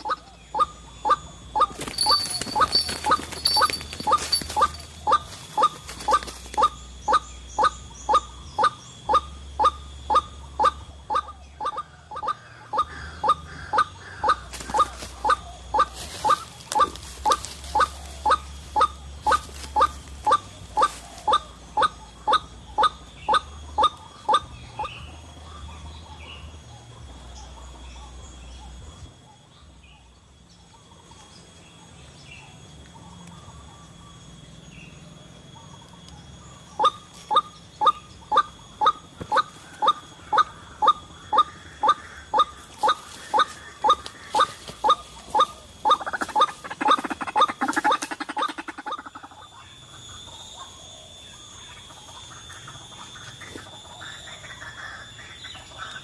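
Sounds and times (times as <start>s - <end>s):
waterhen calling: 0.0s - 24.9s.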